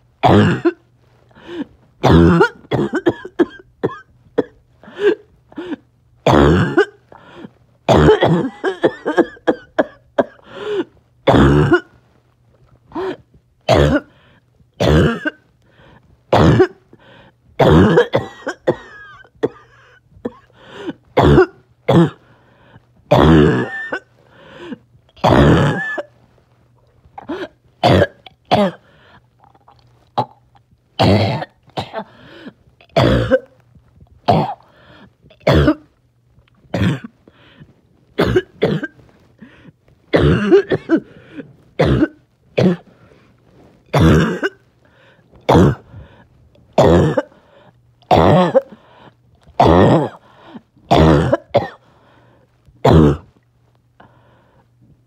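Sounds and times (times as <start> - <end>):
person barking cough: 0.2 - 0.8, 2.0 - 7.0, 7.9 - 10.4, 11.3 - 11.9, 13.0 - 14.2, 14.8 - 15.4, 16.3 - 16.8, 17.6 - 22.2, 23.1 - 24.1, 25.2 - 26.1, 27.2 - 28.9, 31.0 - 32.2, 32.9 - 33.5, 34.3 - 34.7, 35.4 - 35.9, 36.7 - 37.1, 38.2 - 39.0, 40.1 - 42.9, 43.9 - 44.6, 45.5 - 45.9, 46.8 - 47.4, 48.1 - 48.8, 49.6 - 50.2, 50.9 - 51.8, 52.8 - 53.4.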